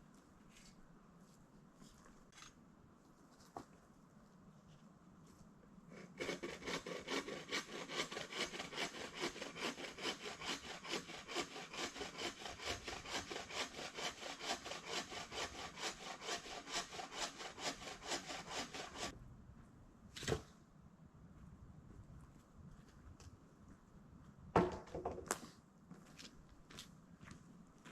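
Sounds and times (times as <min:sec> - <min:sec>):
hand saw cutting wood: 0:05.9 - 0:19.1.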